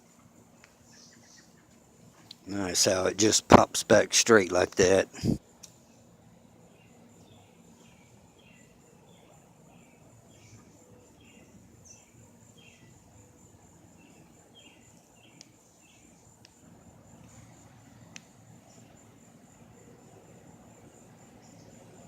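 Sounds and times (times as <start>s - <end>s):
high-pitched insect trill: 0.0s - 22.0s
insect chirps: 0.0s - 22.0s.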